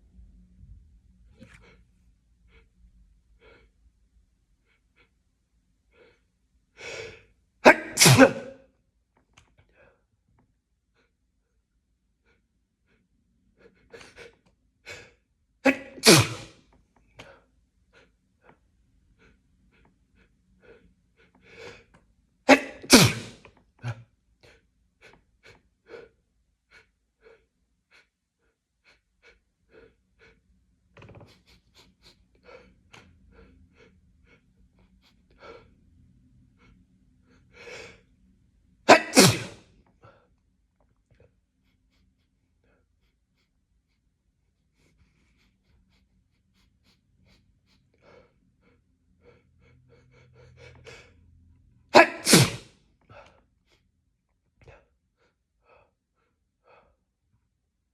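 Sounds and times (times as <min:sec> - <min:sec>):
person sneezing loudly: 0:07.6 - 0:08.7, 0:14.9 - 0:16.6, 0:22.5 - 0:24.0, 0:38.9 - 0:39.6, 0:51.9 - 0:53.2
faint breaths and sniffs: 0:24.4 - 0:38.1, 0:41.0 - 0:51.4.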